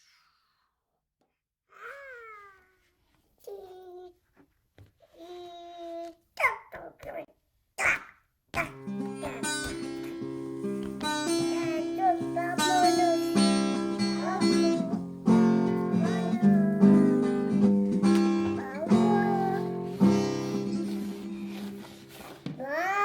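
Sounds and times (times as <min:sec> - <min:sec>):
acoustic guitar chords: 0:08.6 - 0:22.4.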